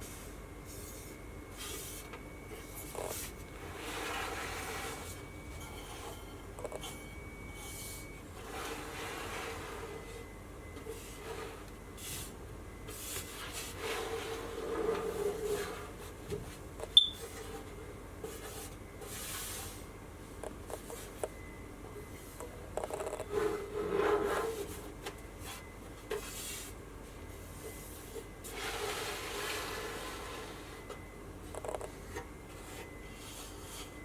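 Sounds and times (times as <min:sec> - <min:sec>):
rubbing and scraping handling noises: 0:00.1 - 0:06.4, 0:07.6 - 0:16.6, 0:22.2 - 0:30.9.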